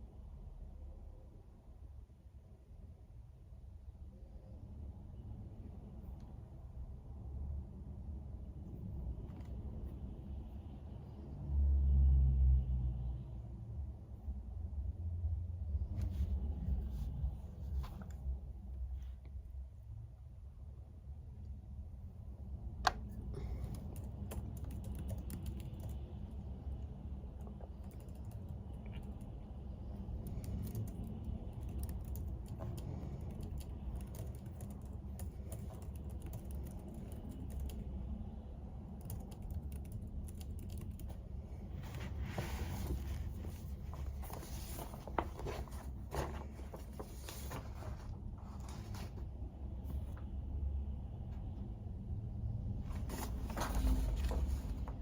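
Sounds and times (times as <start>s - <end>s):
low steady hum: 0.0s - 55.0s
keyboard typing: 23.7s - 26.1s, 27.4s - 29.3s, 30.2s - 37.8s, 38.9s - 41.2s.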